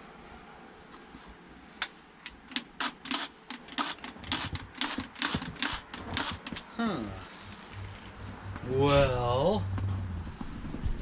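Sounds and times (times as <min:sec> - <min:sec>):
chainsaw trigger clicking: 0:02.3 - 0:06.6.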